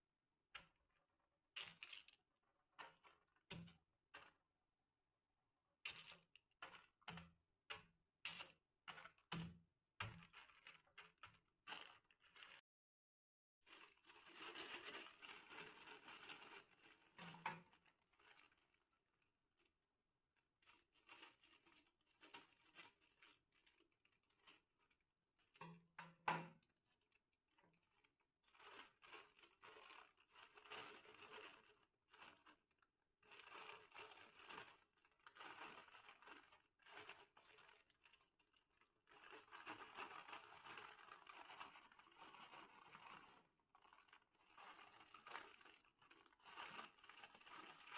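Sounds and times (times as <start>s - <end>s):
plastic packets crinkling: 1.6s - 4.3s, 10.1s - 12.6s, 13.7s - 18.9s, 20.6s - 25.0s, 27.6s - 47.9s.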